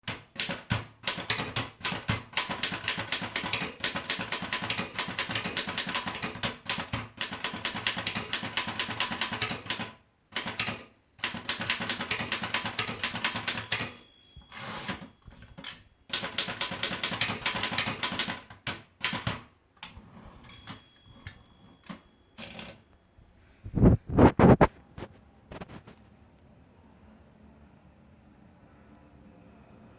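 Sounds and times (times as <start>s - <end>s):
manual typewriter key strikes: 0.0s - 22.8s.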